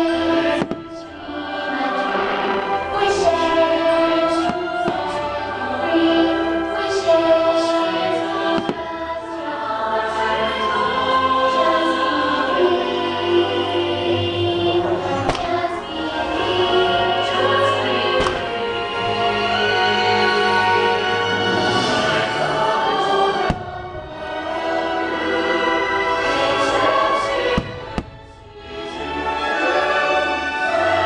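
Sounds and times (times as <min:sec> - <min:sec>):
orchestra and choir: 0:00.0 - 0:31.0
firework bangs: 0:15.2 - 0:15.7, 0:18.2 - 0:18.6, 0:23.4 - 0:24.4, 0:27.6 - 0:28.4.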